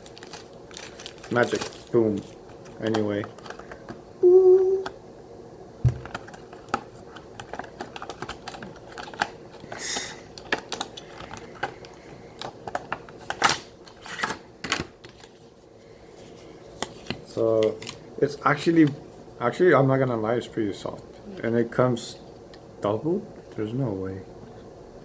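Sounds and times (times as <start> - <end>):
packaging rustle: 0.0 - 3.9, 6.0 - 14.4.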